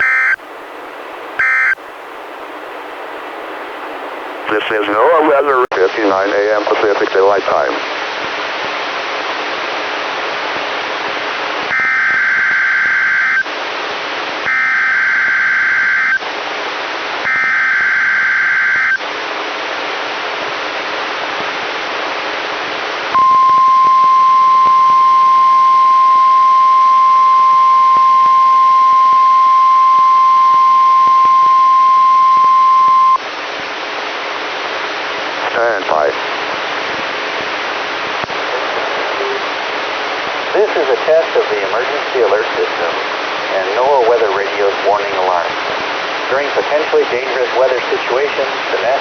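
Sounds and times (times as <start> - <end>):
digital data bursts: 0.0 - 0.4, 1.4 - 1.8
steady alarm tone: 0.0 - 0.4, 1.4 - 1.8
static hiss: 0.0 - 5.7, 33.2 - 49.0.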